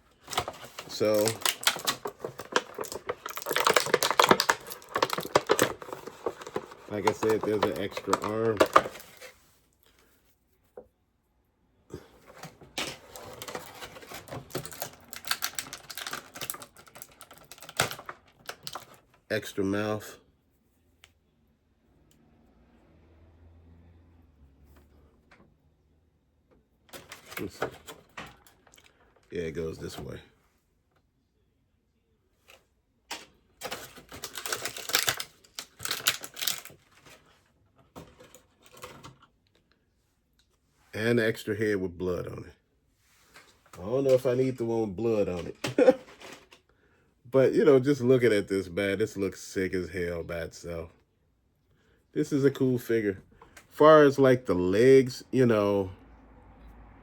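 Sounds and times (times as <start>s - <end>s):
plastic toy parts clicking: 1.1s - 8.9s, 14.5s - 19.0s, 33.7s - 36.7s.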